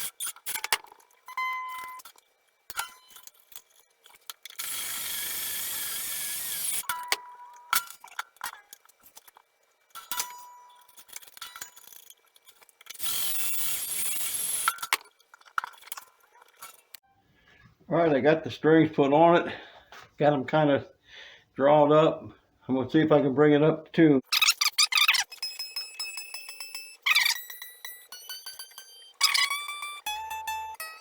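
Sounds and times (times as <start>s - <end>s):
cordless drill running: 4.6s - 6.9s, 13.0s - 14.7s
metallic clinks and taps: 25.2s - 31.0s
guitar string ringing notes: 25.3s - 31.0s.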